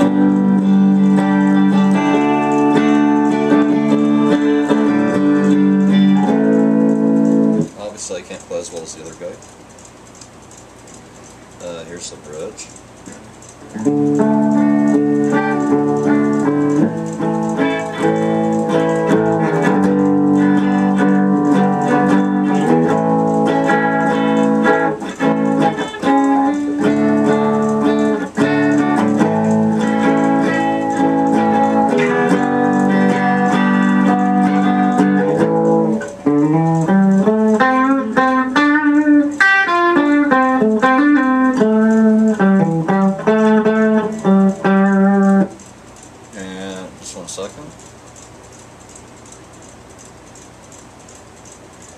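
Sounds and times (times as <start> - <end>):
clean electric guitar: 0.0 - 9.5, 11.6 - 47.0.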